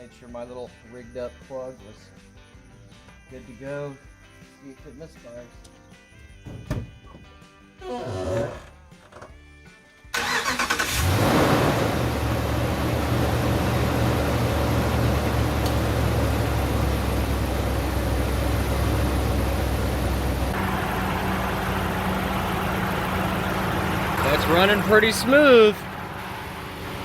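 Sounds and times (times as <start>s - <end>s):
engine cranking and starting: 10.2s - 27.0s
engine idling: 10.2s - 27.0s.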